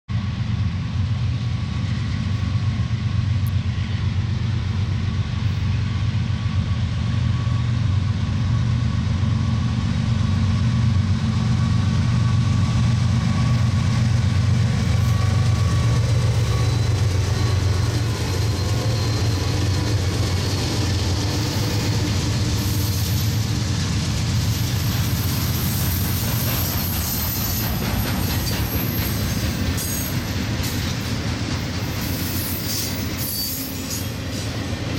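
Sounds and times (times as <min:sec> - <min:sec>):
diesel locomotive engine drone: 0:00.1 - 0:34.9
rolling train cars and wheels: 0:00.1 - 0:34.9
faint thin squeal: 0:14.9 - 0:20.0, 0:32.2 - 0:34.5.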